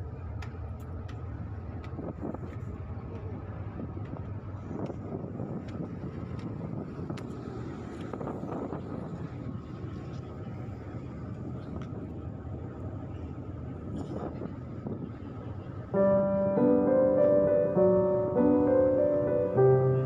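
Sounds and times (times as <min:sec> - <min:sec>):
wind noise: 0:03.8 - 0:12.2
ship rumble: 0:15.9 - 0:20.0
piano music: 0:16.0 - 0:20.0.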